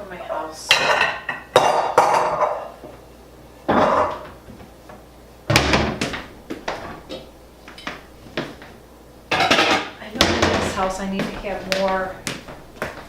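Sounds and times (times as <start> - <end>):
dishes clattering: 0.7 - 2.8, 3.7 - 4.4, 9.3 - 11.0.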